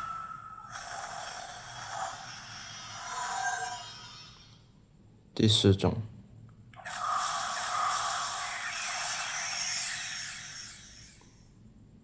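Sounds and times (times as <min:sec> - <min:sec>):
harsh electronic hiss from toy: 0:00.6 - 0:04.6, 0:06.8 - 0:11.4.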